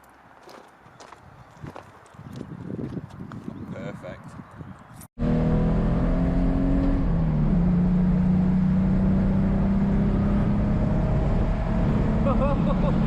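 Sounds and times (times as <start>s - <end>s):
car engine accelerating: 5.2s - 13.0s.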